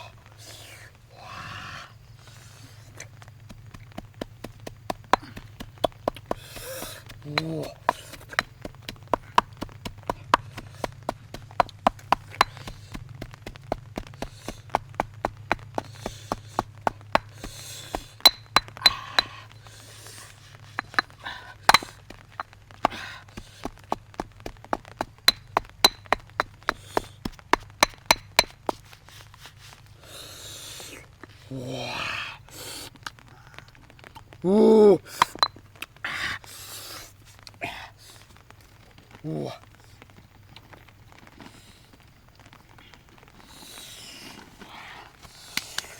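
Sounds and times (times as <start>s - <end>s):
rapid sharp knocks: 3.5s - 19.4s, 21.7s - 28.8s.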